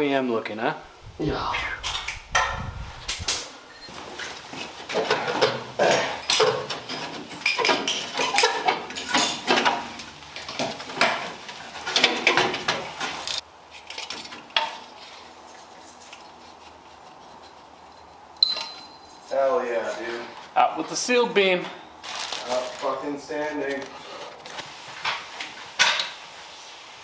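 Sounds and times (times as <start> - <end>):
metal tools clinking and clattering: 3.7 - 14.8.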